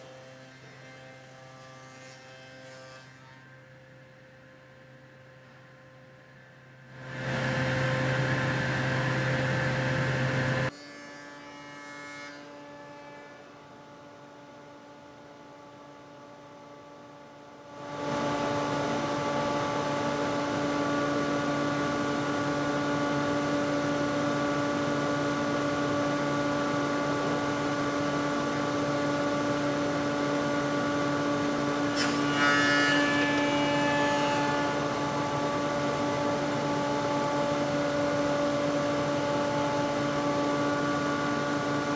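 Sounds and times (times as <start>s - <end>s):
harsh machine buzz: 28.7s - 40.6s
woodworking machine motor humming: 29.0s - 41.9s.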